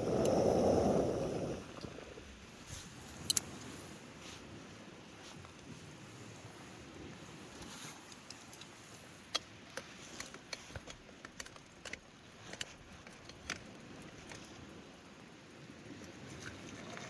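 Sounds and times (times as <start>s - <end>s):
sharp irregular clicks and knocks: 9.3s - 14.6s.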